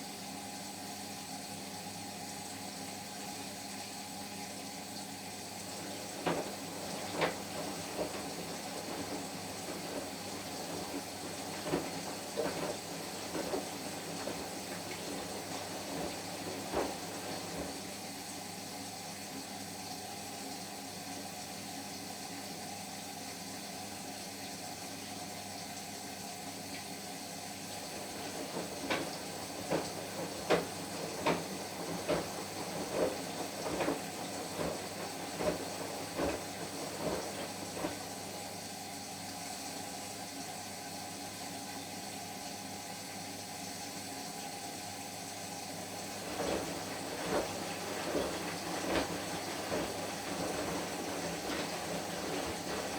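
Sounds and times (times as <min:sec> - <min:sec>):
washing machine running: 0:00.0 - 0:52.9
water and laundry sloshing: 0:04.5 - 0:19.0, 0:27.4 - 0:40.1, 0:44.5 - 0:52.9.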